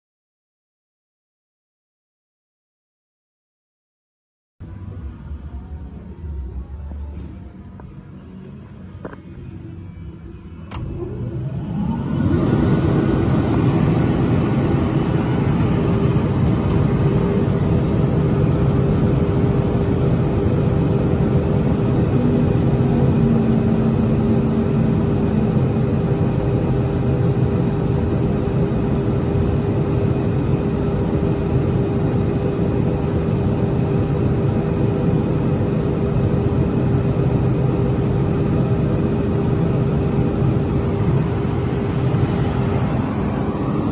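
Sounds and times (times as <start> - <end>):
air compressor running: 10.7 - 43.9.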